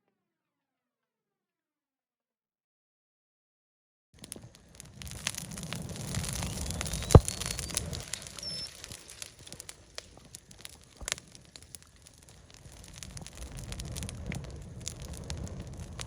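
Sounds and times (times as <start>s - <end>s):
campfire crackling: 4.2s - 16.0s
loud sharp pop: 6.7s - 7.9s.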